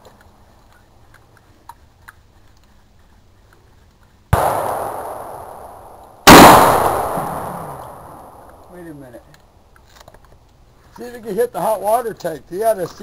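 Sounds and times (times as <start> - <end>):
gunshots with echo: 4.4 - 8.4.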